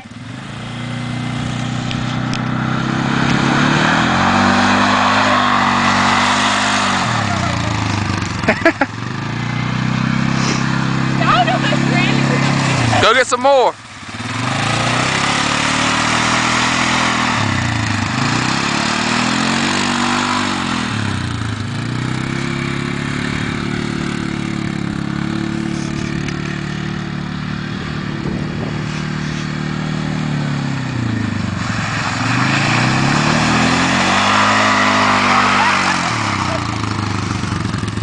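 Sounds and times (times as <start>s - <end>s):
quad bike engine revving: 0.0s - 38.0s.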